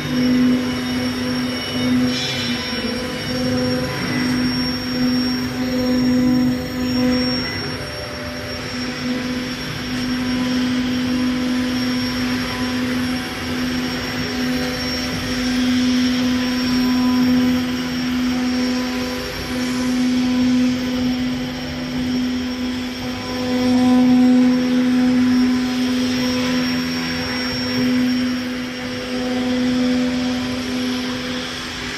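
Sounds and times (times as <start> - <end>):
cnc router humming: 0.0 - 31.9.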